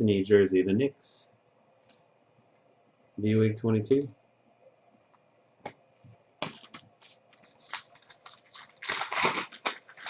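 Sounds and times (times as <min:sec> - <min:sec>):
foil wrapper crinkling: 0:06.4 - 0:10.0
loud tearing rustle: 0:07.4 - 0:10.0.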